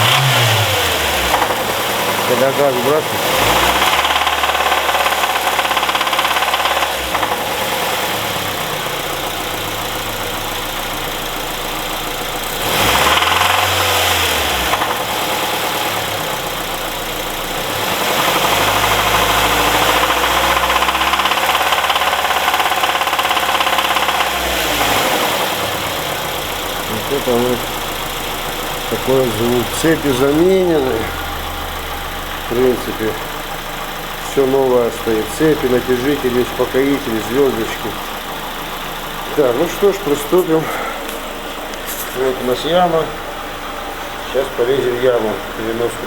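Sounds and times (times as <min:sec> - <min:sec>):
car engine revving with a knock: 0:00.0 - 0:02.3, 0:03.2 - 0:08.7, 0:12.5 - 0:16.4.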